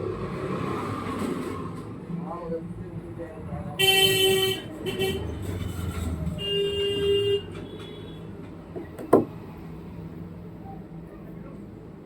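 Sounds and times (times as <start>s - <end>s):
vehicle horn: 3.8s - 5.4s, 6.4s - 8.2s.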